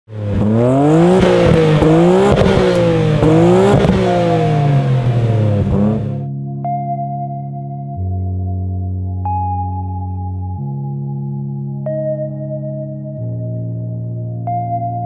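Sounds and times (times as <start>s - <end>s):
car engine revving: 0.1s - 6.3s
exhaust cracks: 0.1s - 6.3s.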